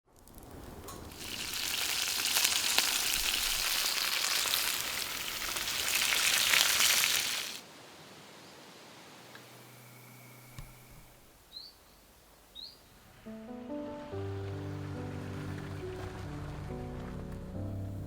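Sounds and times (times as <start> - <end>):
sausages sizzling in a wok: 1.1 - 7.6.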